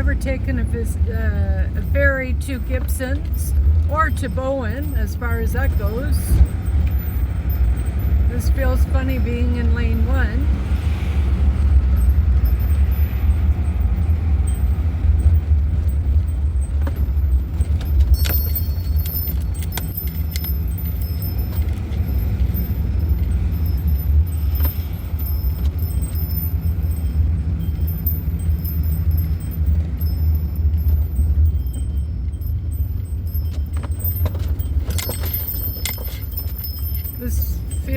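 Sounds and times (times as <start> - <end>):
van engine droning: 0.0 - 37.9.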